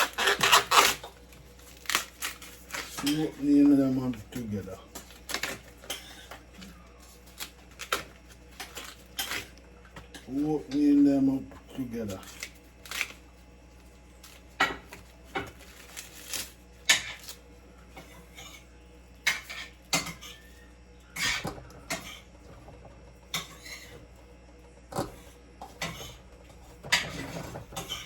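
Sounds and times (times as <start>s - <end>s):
corn husks tearing: 0.0s - 6.0s, 11.8s - 17.5s.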